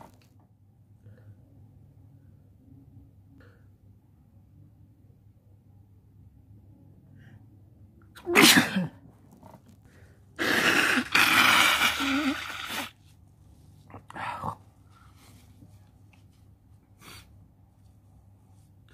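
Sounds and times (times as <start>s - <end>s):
man sneezing: 8.2s - 9.0s.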